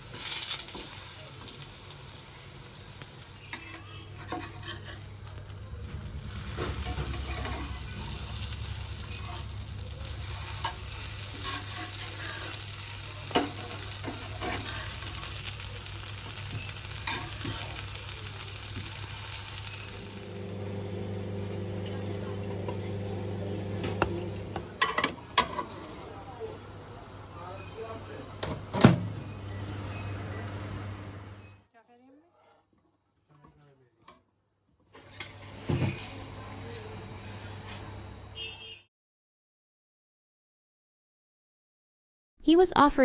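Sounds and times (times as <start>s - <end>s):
food sizzling in frying pan: 0.0s - 21.3s, 35.2s - 36.8s.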